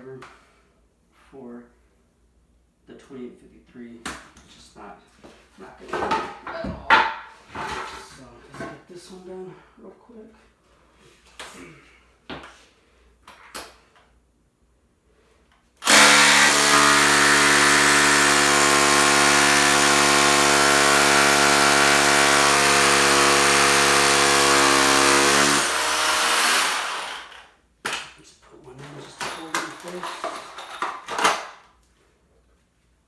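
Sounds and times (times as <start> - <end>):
rotary hammer drilling into concrete: 15.8 - 27.5.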